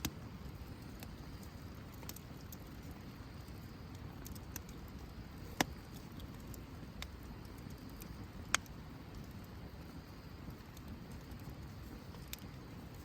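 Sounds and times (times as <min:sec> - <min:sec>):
campfire rumble: 0:00.0 - 0:13.0
fire crackles and pops: 0:00.0 - 0:13.0.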